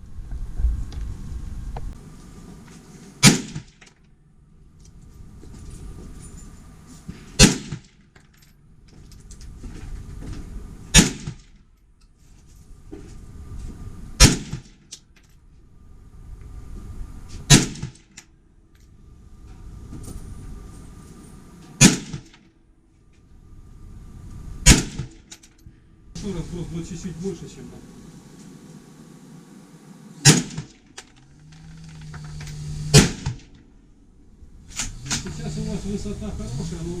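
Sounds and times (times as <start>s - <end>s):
low rushing noise: 0.0s - 5.4s, 15.5s - 37.0s
rifle shots: 3.2s - 3.8s, 7.4s - 8.0s, 10.9s - 11.6s, 14.2s - 14.8s, 17.5s - 18.1s, 21.8s - 22.4s, 24.6s - 25.2s, 30.2s - 31.0s, 32.9s - 33.5s.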